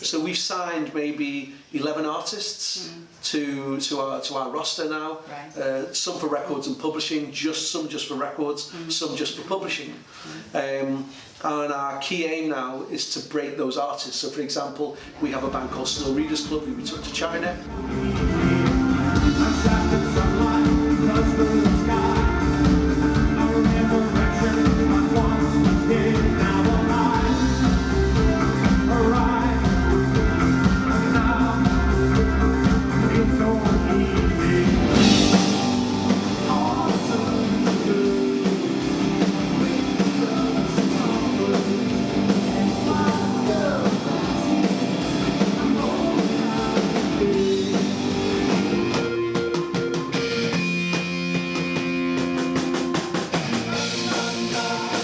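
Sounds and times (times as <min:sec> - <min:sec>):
rock song with singing: 0:15.0 - 0:55.0.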